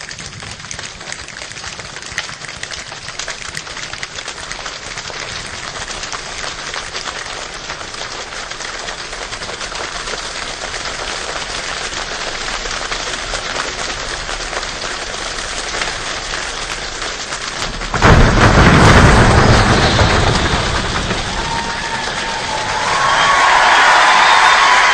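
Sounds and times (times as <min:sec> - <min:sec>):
rain pattering: 0:00.0 - 0:24.9
deep low rumble: 0:17.6 - 0:23.2.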